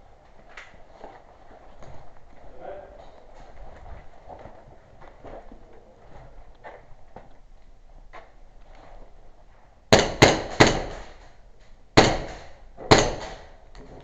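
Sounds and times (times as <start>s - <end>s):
airsoft gunfire cracks with echo: 9.9s - 11.2s.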